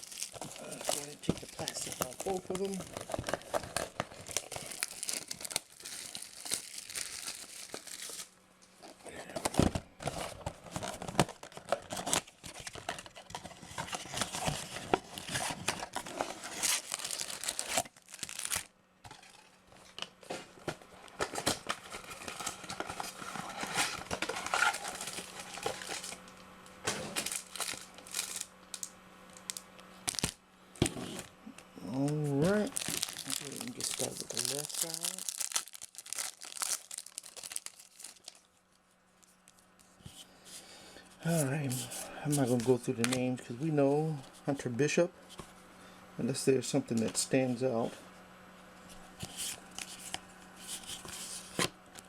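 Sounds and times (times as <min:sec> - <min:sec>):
plastic wrap crinkling and tearing: 0:00.0 - 0:19.4, 0:21.0 - 0:30.4, 0:32.0 - 0:39.8, 0:49.2 - 0:52.0.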